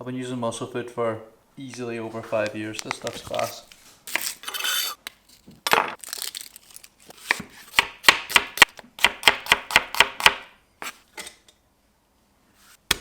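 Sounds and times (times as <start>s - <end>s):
knife chopping on board: 7.2s - 11.0s.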